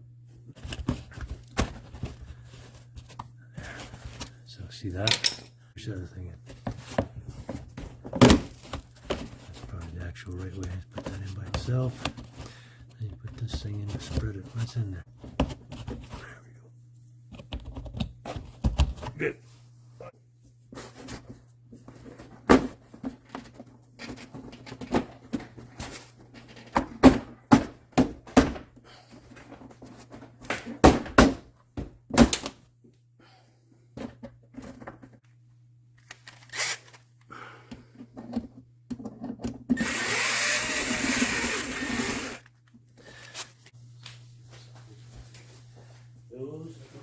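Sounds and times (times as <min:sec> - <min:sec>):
power drill running: 0:39.8 - 0:42.5.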